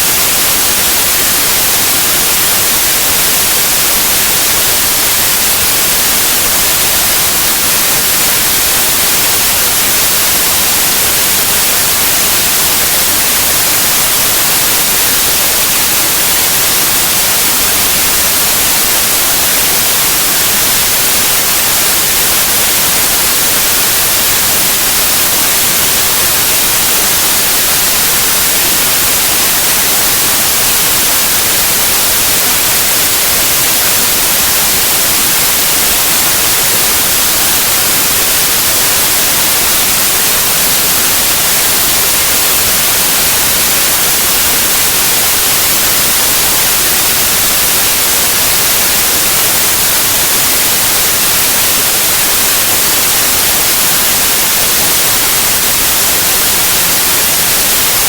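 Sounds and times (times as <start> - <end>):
white noise hiss: 0.0 - 58.0.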